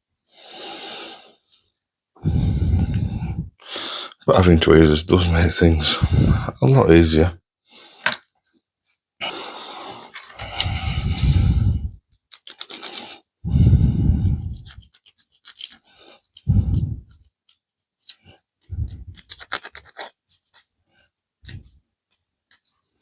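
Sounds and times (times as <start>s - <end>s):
plastic parts scratching and clicking: 10.1s - 11.5s, 12.1s - 13.2s, 14.4s - 20.7s.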